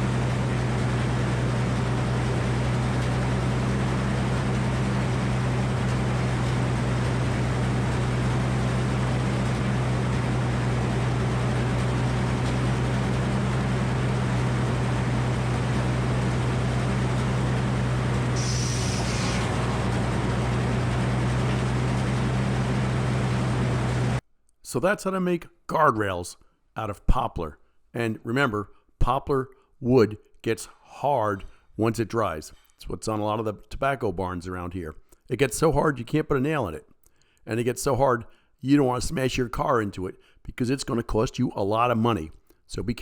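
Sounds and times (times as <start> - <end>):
sawmill engine running: 0.0 - 24.2.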